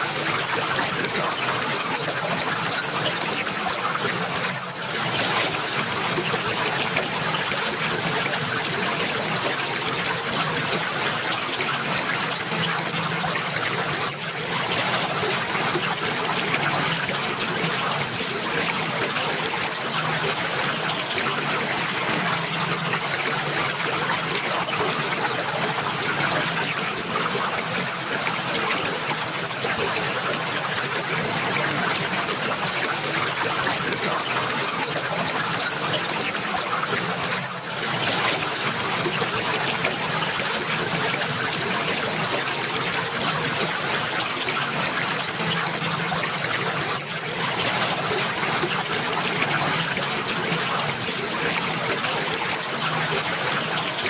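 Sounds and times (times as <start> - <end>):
water trickling and splashing: 0.0 - 54.0.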